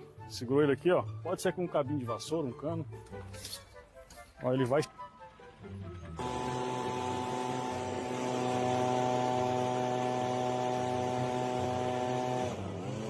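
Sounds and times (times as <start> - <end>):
small electric motor humming: 6.2 - 13.0.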